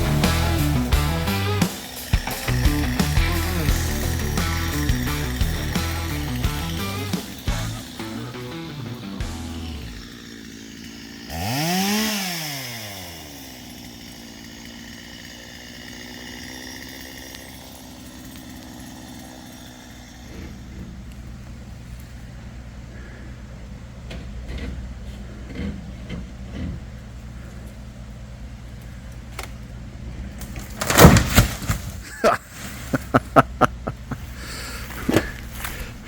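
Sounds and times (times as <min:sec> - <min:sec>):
deeper engine droning: 0:00.0 - 0:10.2, 0:19.2 - 0:36.0
small gasoline engine revving: 0:00.0 - 0:31.2.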